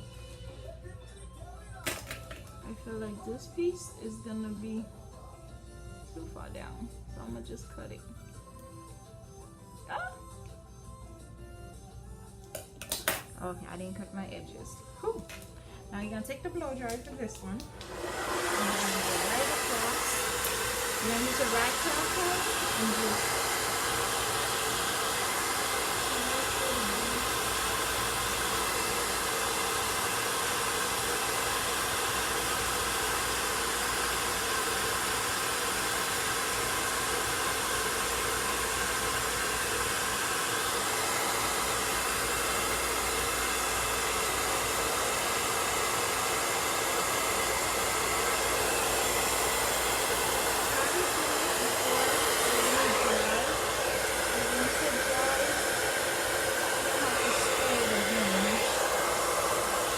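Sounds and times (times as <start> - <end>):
blow dryer running: 1.8 - 4.6, 16.8 - 59.9.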